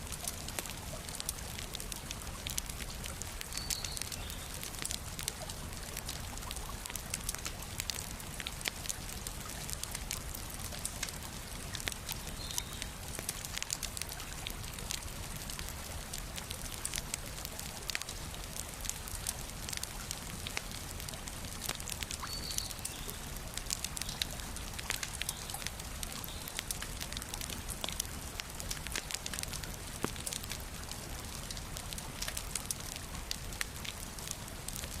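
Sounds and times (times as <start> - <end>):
wood fire crackling and popping: 0.0 - 35.0.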